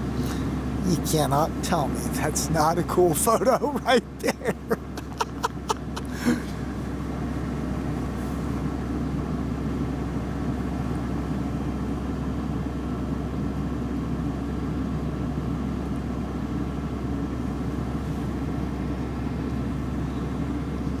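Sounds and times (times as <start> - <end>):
low engine rumble with hiss: 0.0 - 21.0.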